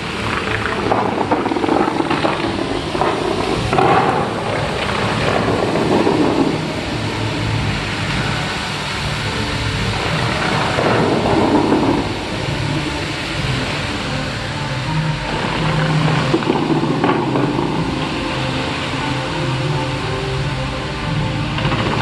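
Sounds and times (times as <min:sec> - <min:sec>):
fountain water splashing: 0:00.0 - 0:22.0.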